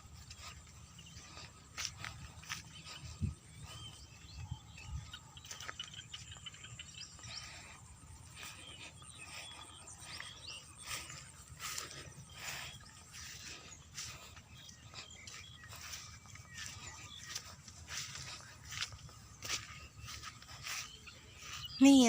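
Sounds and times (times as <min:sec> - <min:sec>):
frogs chirping: 0:00.0 - 0:21.9.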